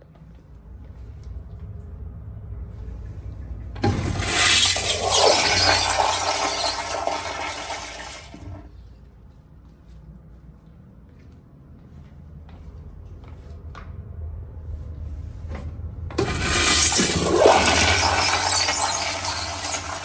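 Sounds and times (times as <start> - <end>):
low steady hum: 0.0 - 20.0
toilet flush water rushing: 3.8 - 8.7, 16.2 - 20.0.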